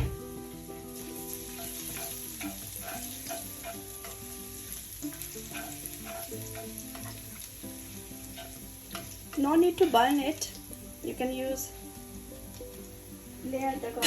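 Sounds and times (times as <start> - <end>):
garlic sizzling in oil: 0.0 - 14.0.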